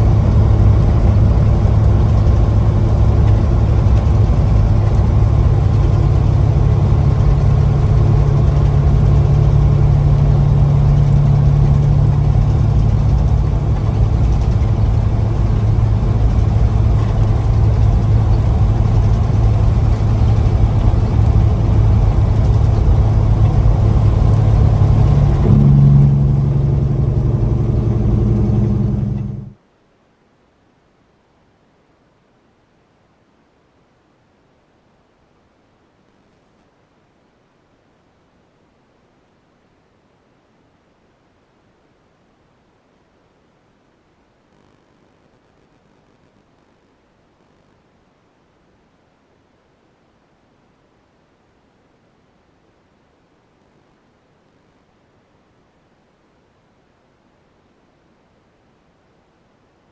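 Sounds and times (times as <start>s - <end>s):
diesel truck engine running: 0.0s - 29.6s.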